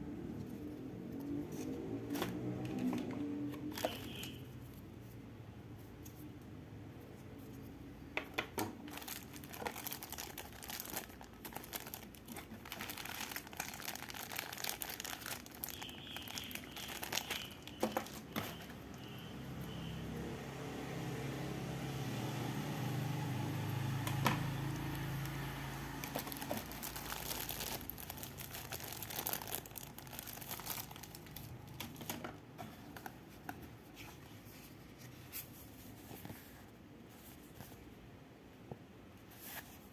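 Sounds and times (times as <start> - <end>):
plastic packaging crinkling and tearing: 8.7 - 19.2, 24.6 - 32.2.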